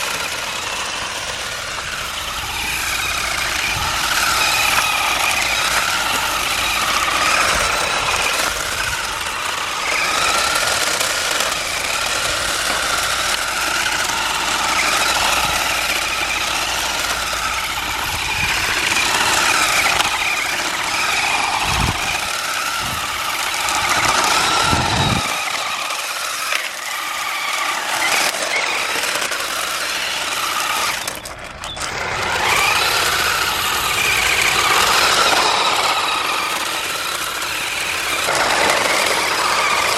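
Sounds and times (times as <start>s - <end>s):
electric motor whining: 0.0s - 39.9s.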